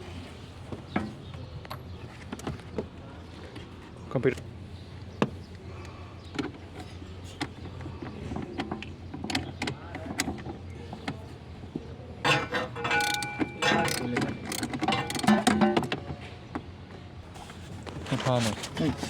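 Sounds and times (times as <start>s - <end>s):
metal tools clinking and clanking: 12.2s - 16.1s.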